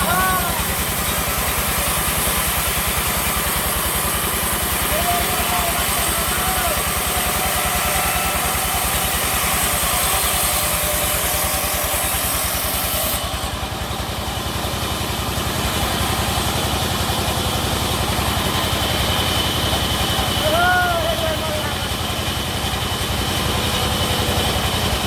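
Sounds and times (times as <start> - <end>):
sawmill engine throbbing: 0.0 - 25.0.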